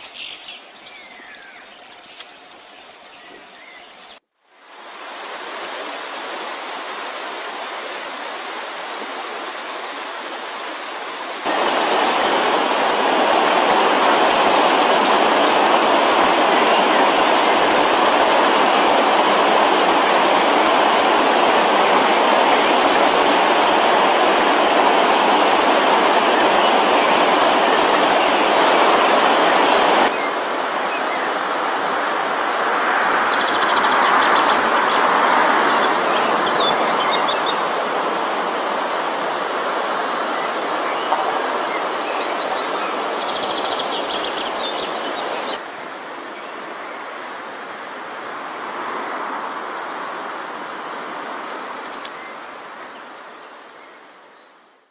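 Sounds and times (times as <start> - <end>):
small bird singing: 0.0 - 4.2
rushing river water: 0.0 - 54.9.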